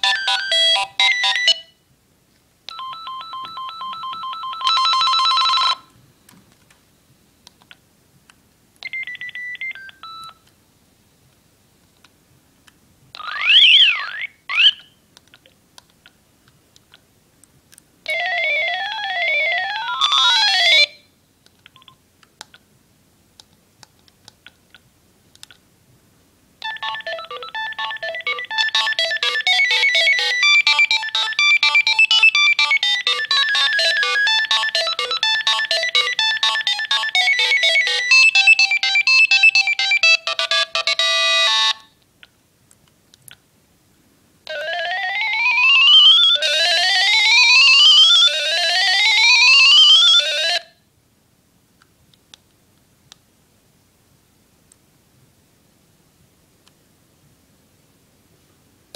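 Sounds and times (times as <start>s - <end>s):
melodic phone ringtone: 0.0s - 1.7s, 2.7s - 5.9s, 8.8s - 10.4s, 18.1s - 21.0s, 26.6s - 41.9s, 44.5s - 50.7s.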